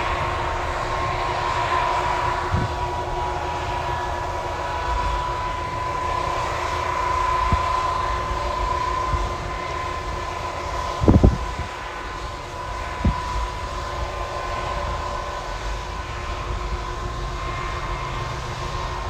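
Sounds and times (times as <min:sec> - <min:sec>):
high whine: 0:00.0 - 0:15.0.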